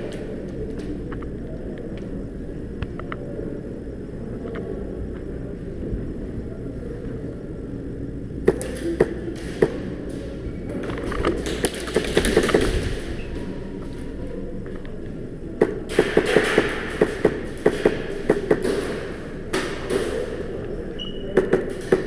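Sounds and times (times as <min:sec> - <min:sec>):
steady low rumble: 0:00.0 - 0:20.9
airsoft gun cracks: 0:15.6 - 0:20.4.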